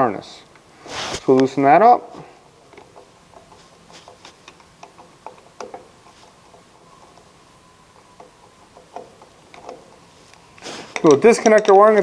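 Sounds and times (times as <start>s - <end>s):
faint steady hum: 0.0s - 11.9s
hand tools tapping metal: 2.6s - 12.0s.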